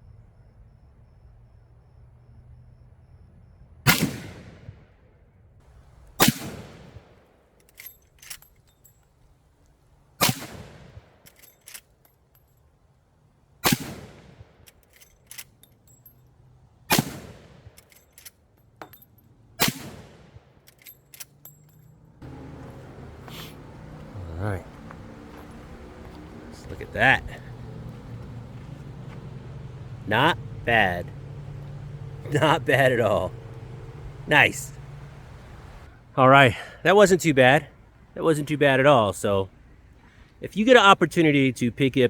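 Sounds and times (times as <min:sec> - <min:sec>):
rifle shots: 0:03.9 - 0:04.9, 0:06.2 - 0:07.3, 0:10.2 - 0:11.8, 0:13.6 - 0:15.4, 0:16.9 - 0:18.2, 0:19.6 - 0:20.6.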